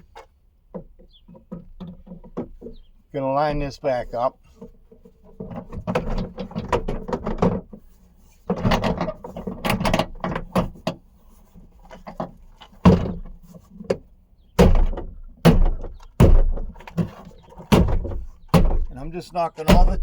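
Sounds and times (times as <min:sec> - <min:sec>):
sharp knocks on plastic panel: 0:12.8 - 0:13.3, 0:14.6 - 0:19.0, 0:19.6 - 0:20.0.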